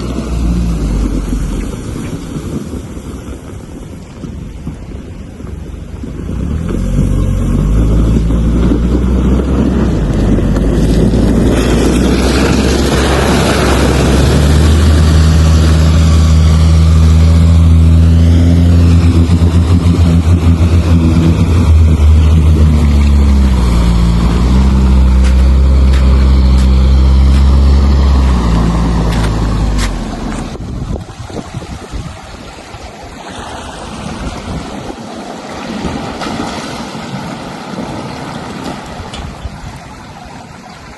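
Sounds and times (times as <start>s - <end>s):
vehicle engine running hard: 0.0s - 3.0s, 5.4s - 32.1s
rushing noise: 6.0s - 39.1s.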